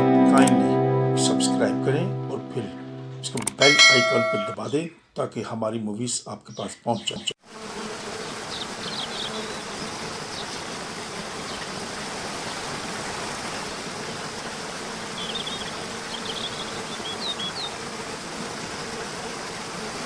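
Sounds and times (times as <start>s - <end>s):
high bird chirps: 15.2s - 17.7s.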